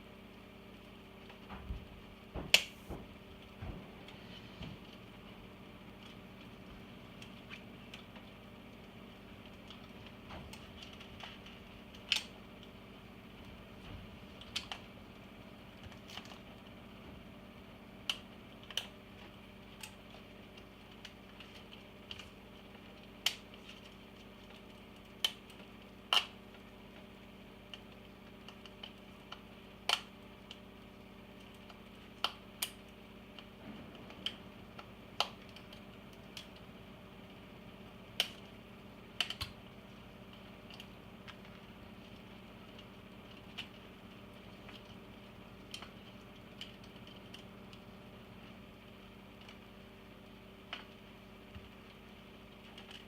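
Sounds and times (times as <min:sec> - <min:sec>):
faint steady hum: 0:00.0 - 0:53.0.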